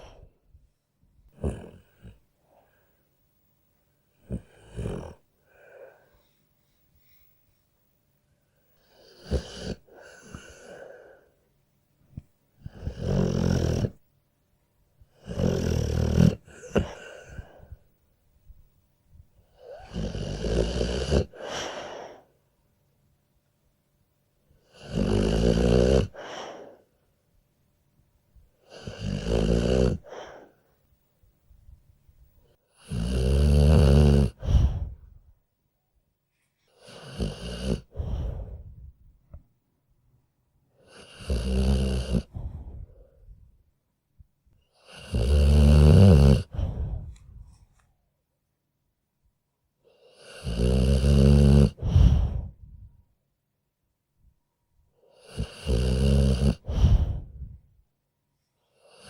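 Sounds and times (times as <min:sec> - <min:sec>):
dog snoring: 0:01.3 - 0:02.8, 0:04.1 - 0:06.0, 0:08.8 - 0:11.2, 0:12.1 - 0:14.0, 0:15.1 - 0:17.8, 0:19.5 - 0:22.2, 0:24.6 - 0:26.8, 0:28.6 - 0:30.5, 0:32.7 - 0:35.2, 0:36.7 - 0:38.9, 0:40.8 - 0:43.3, 0:44.7 - 0:47.5, 0:49.9 - 0:52.9, 0:55.1 - 0:57.7, 0:58.7 - 0:59.0.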